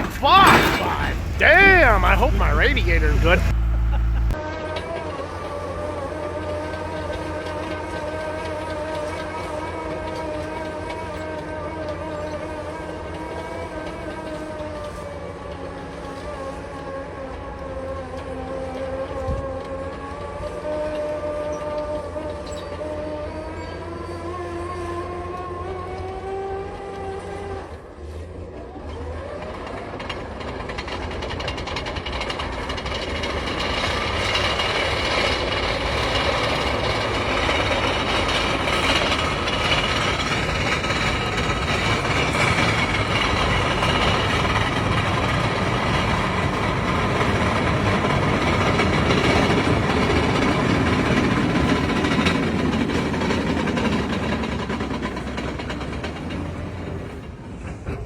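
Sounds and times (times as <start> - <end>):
engine revving: 0.0 - 15.1
loud rumbling clatter: 0.0 - 16.2, 29.2 - 58.0.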